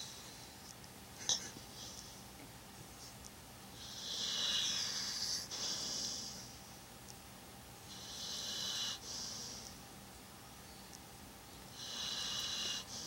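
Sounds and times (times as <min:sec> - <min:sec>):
pet snoring: 0:03.8 - 0:06.5, 0:07.9 - 0:09.8, 0:11.7 - 0:13.0.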